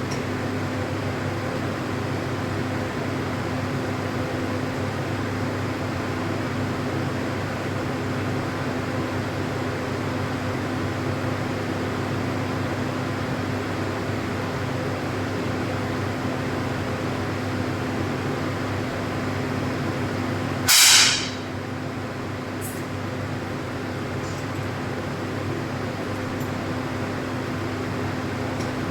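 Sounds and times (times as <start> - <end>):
ventilation fan hum: 0.0 - 28.9
air pistol shot: 20.7 - 21.4.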